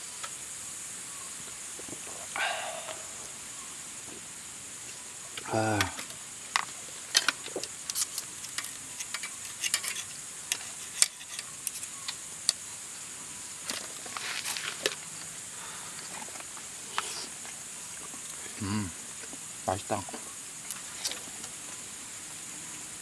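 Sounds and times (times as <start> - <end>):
steady high hiss: 0.0 - 23.0
utensils tapping camp cookware: 5.4 - 12.6.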